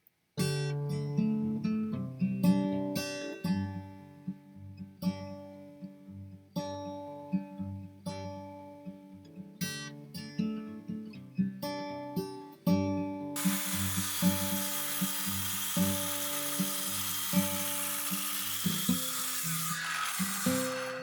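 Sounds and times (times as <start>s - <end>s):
hissing power tool: 13.4s - 21.0s.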